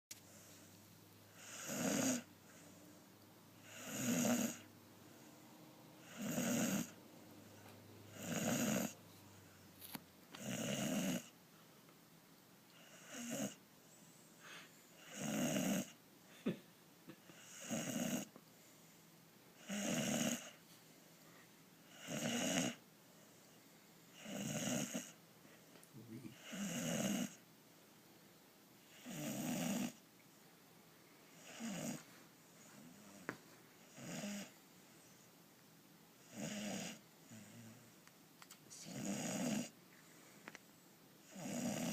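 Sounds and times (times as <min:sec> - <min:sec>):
person snoring: 0:01.4 - 0:02.3, 0:03.6 - 0:04.7, 0:06.0 - 0:07.0, 0:08.1 - 0:09.0, 0:10.4 - 0:11.3, 0:12.8 - 0:13.6, 0:14.5 - 0:16.0, 0:17.3 - 0:18.3, 0:19.6 - 0:20.6, 0:21.9 - 0:22.8, 0:24.2 - 0:25.2, 0:26.0 - 0:27.4, 0:28.9 - 0:30.0, 0:31.4 - 0:32.0, 0:33.9 - 0:34.5, 0:38.7 - 0:39.8, 0:41.3 - 0:41.9.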